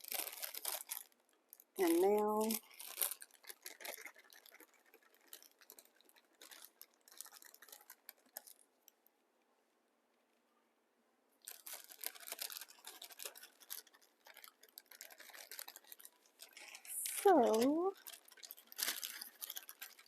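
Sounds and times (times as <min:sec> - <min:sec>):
rustling: 0:01.8 - 0:08.6, 0:11.4 - 0:20.0.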